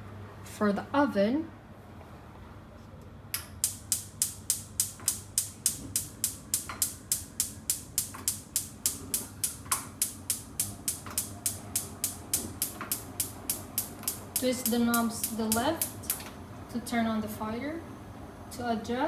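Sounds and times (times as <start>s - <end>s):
gas oven igniter clicking: 3.4s - 17.8s.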